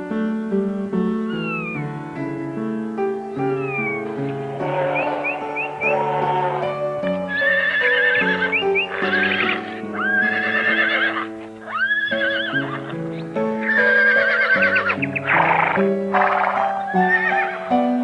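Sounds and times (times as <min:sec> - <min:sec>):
background music with held notes: 0:00.0 - 0:18.0
horse whinnying: 0:01.3 - 0:01.8, 0:03.5 - 0:17.8.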